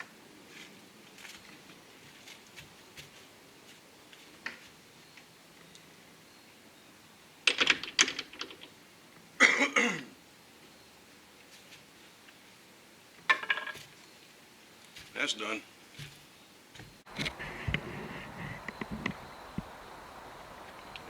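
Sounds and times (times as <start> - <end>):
faint ticks: 16.8 - 21.0.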